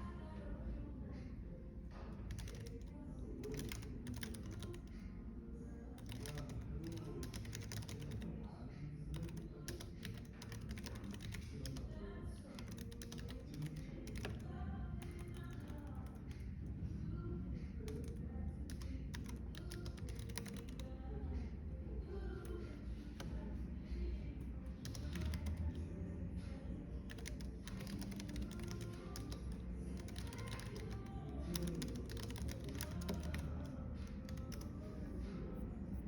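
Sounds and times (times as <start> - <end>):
soft background music: 0.0 - 36.0
typing on keyboard: 1.9 - 5.1, 5.9 - 16.6, 17.8 - 21.0, 24.4 - 26.0, 26.8 - 35.2.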